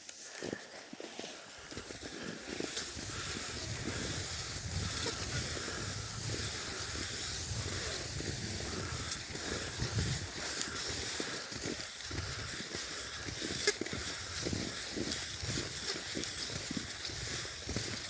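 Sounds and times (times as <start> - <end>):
skis creaking on snow: 0.0 - 18.0
snow hissing: 2.7 - 12.0.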